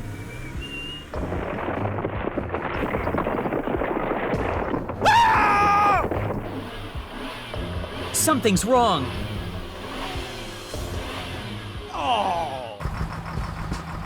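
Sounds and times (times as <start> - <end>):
crackling rumbling crash: 1.1 - 8.0.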